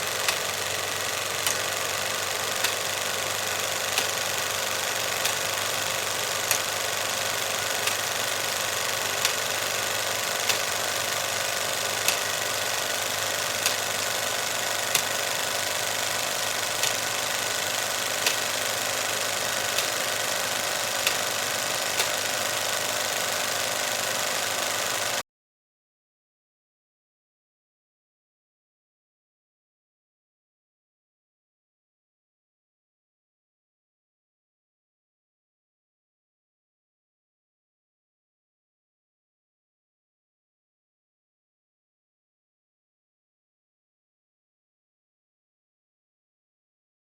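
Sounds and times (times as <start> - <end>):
film camera mechanism clicking: 0.0 - 25.2.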